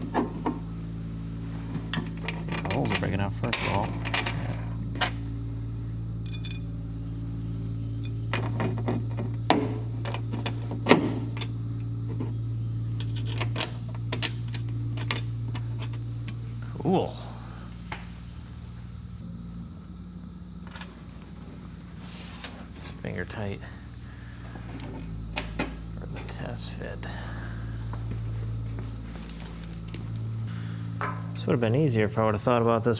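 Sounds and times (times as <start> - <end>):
low hum: 0.0 - 32.9
small metal parts clinking: 6.2 - 6.8, 13.0 - 16.0, 29.0 - 30.3.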